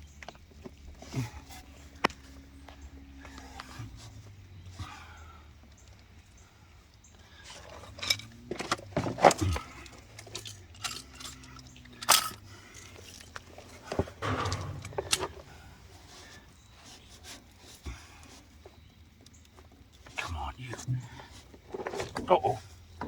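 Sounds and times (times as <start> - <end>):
metal tools clinking and scraping: 7.5 - 16.4
sharp knocks: 14.2 - 16.1.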